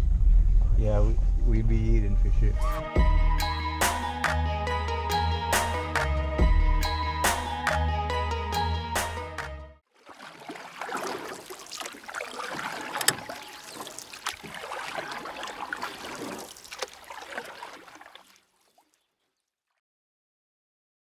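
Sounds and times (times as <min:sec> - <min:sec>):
water splashing and gurgling: 0:09.9 - 0:19.4.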